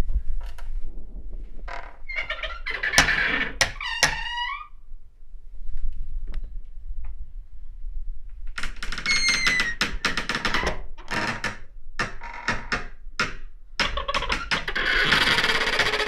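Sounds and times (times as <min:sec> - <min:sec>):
low rumble: 0:00.0 - 0:09.0
rattling creaks and knocks: 0:01.7 - 0:04.7, 0:08.5 - 0:16.0
door creaking: 0:01.7 - 0:04.8, 0:08.5 - 0:16.0.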